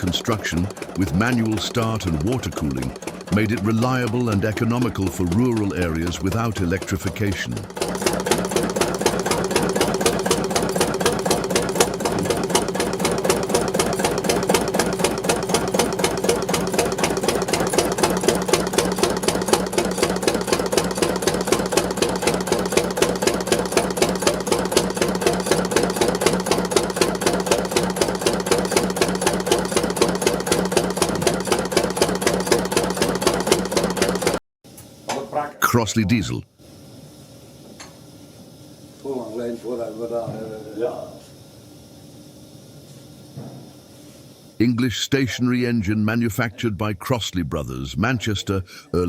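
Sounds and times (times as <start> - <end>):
stationary engine knocking: 0.0 - 34.4.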